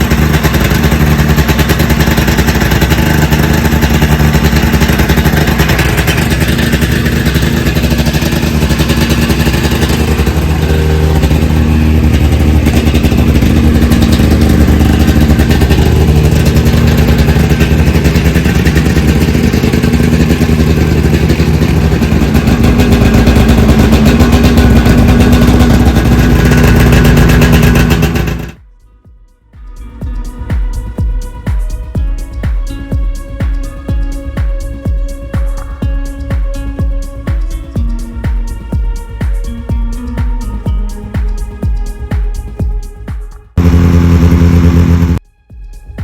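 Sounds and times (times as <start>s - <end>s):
snowmobile engine running: 0.0s - 28.6s, 43.5s - 45.2s.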